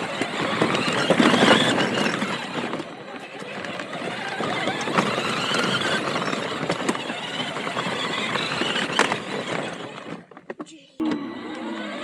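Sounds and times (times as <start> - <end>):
toy truck rattling over dirt: 0.0 - 12.0
scattered clicks and knocks: 8.6 - 11.6.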